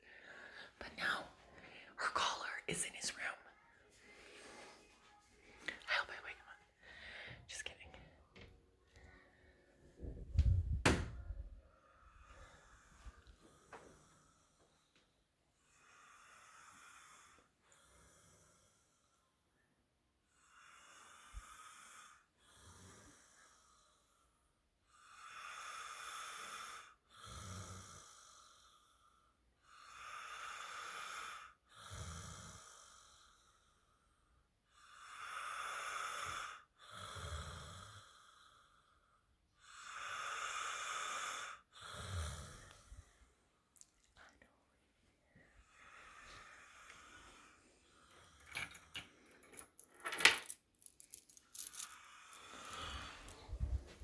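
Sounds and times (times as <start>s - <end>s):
man snoring: 34.9s - 38.5s, 39.6s - 42.9s.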